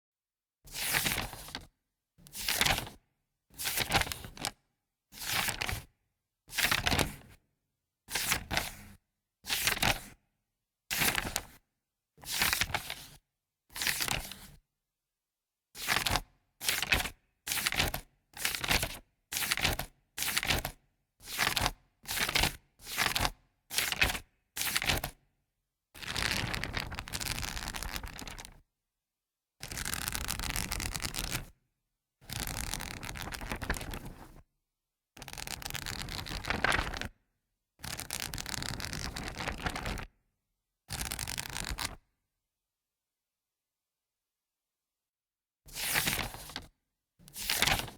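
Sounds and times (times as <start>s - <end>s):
paper pages being turned: 23.1s - 25.1s, 26.3s - 28.4s, 32.5s - 34.4s, 35.8s - 37.1s, 38.0s - 40.1s, 45.7s - 47.9s
pages flipped rapidly: 35.9s - 37.0s, 39.1s - 40.0s, 45.8s - 46.7s, 47.3s - 47.9s.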